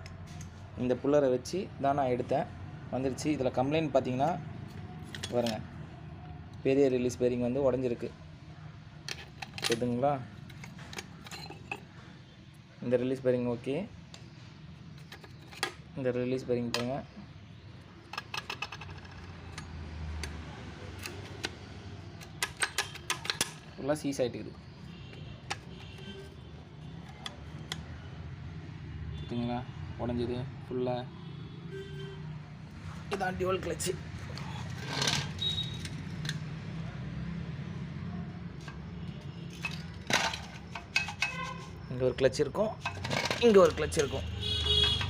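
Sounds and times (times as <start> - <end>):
metallic clicks of clutch handling: 9.1 - 11.8, 18.1 - 23.8.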